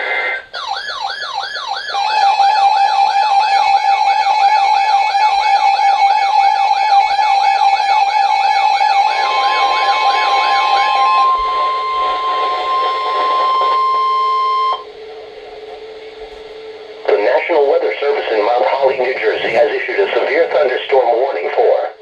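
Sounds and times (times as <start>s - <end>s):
fast warbling siren: 0.4s - 14.9s
steady beep tone: 4.4s - 22.0s
weather radio alert tone: 8.8s - 14.9s, 15.6s - 22.0s.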